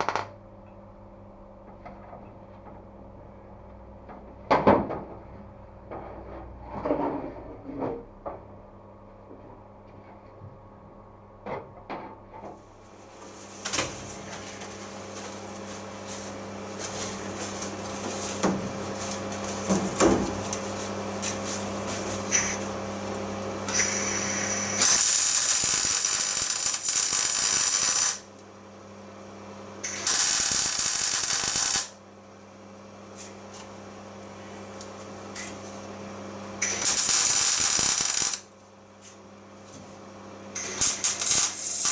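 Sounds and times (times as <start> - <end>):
loud power tool bursts: 0.0 - 0.3, 23.7 - 28.2, 29.9 - 32.0, 36.6 - 38.5, 40.6 - 41.9.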